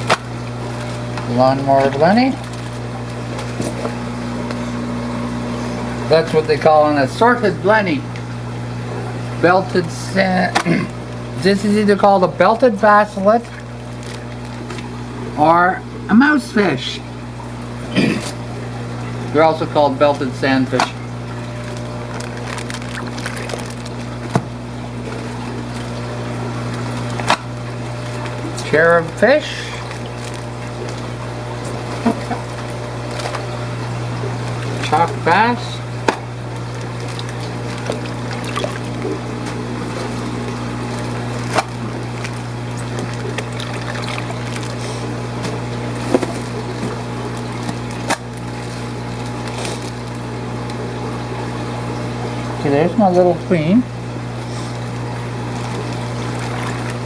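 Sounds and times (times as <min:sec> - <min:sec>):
aquarium pumps humming: 0:00.0 - 0:57.0
water running: 0:00.0 - 0:57.0.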